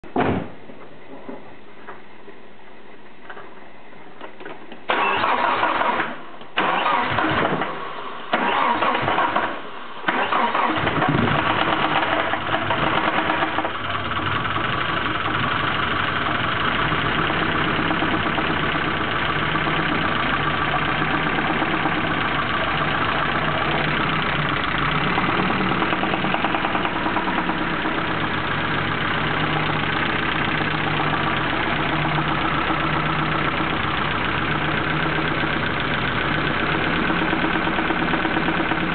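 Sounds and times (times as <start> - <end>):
engine revving and idling: 10.1 - 38.9
starter cranking: 16.3 - 38.9.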